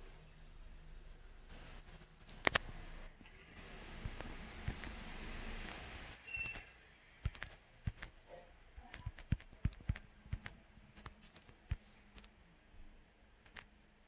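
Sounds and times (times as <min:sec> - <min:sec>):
light clicks and taps: 0:02.2 - 0:05.0, 0:07.2 - 0:12.4.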